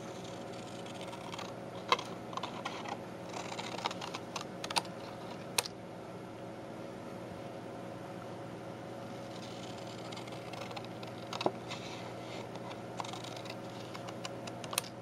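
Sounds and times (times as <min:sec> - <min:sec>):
low background hum: 0:00.0 - 0:15.0.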